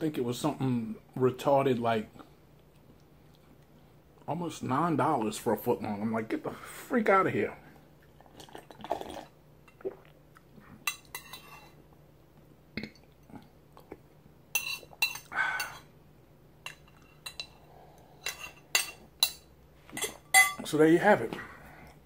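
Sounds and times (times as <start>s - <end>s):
spoon clinking against a bowl: 14.6s - 15.8s, 18.2s - 20.6s.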